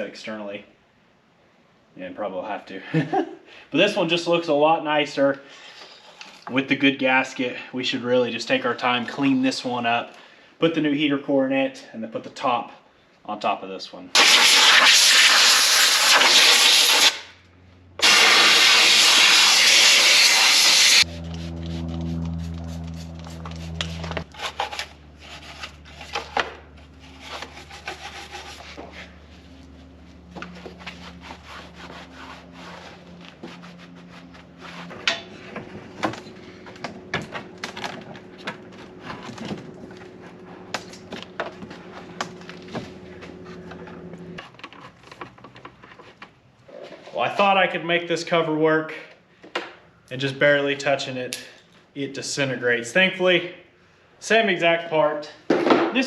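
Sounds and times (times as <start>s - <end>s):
compressed air hissing from nozzle: 18.0s - 21.0s
low hum: 20.6s - 44.4s
scraping and rubbing by hand: 21.0s - 36.6s.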